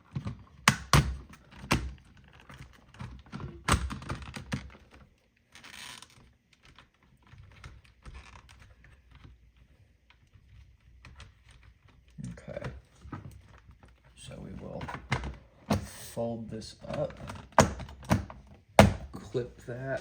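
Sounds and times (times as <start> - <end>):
plastic clicks and knocks: 16.8 - 19.2.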